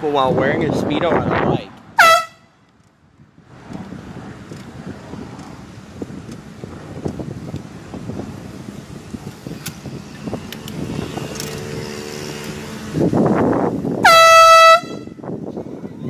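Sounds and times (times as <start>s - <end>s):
air horn blast: 2.0s - 2.5s, 14.0s - 15.2s.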